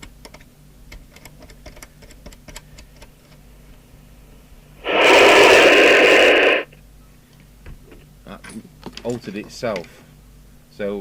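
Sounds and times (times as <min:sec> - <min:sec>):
radio static hiss: 0:04.8 - 0:06.7.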